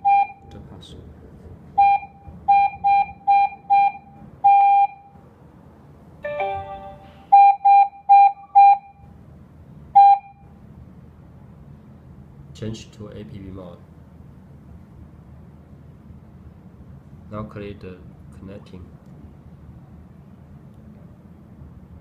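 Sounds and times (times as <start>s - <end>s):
longer beep: 1.8s - 5.0s, 6.2s - 8.9s, 10.0s - 10.4s
multi-tone chime: 6.2s - 7.3s.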